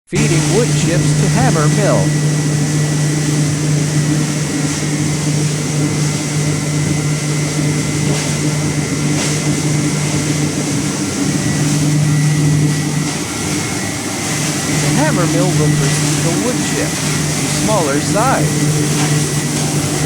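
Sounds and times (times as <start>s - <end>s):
hammer mill grinding wood chips: 0.1s - 6.9s, 14.3s - 20.0s.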